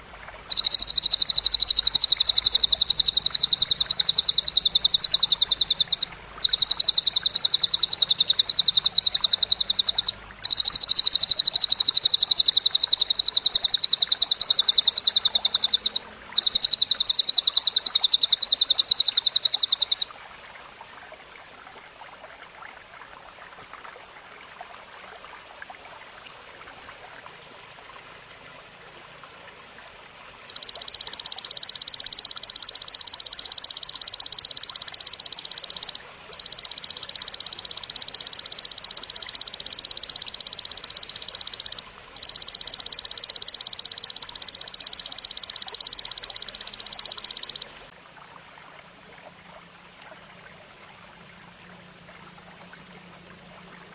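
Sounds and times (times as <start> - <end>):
faint background hiss: 0.0 - 53.9
grasshopper stridulating buzz: 0.5 - 20.0.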